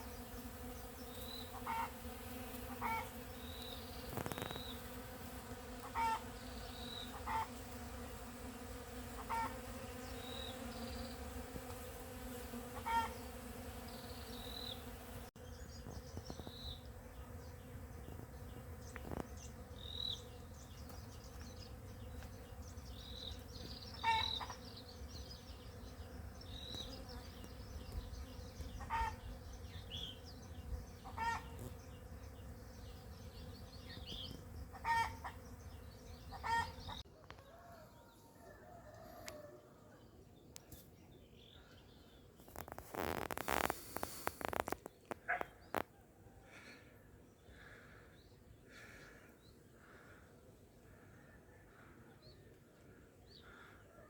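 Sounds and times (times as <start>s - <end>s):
birds chirping: 0.0s - 5.1s, 12.8s - 38.1s
bees buzzing: 0.0s - 37.0s, 42.5s - 45.8s.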